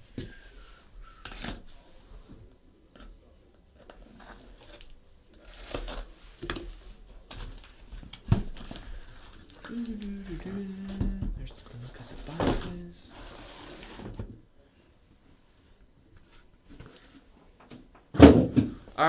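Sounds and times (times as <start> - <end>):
cardboard being cut and torn: 5.4 - 6.6.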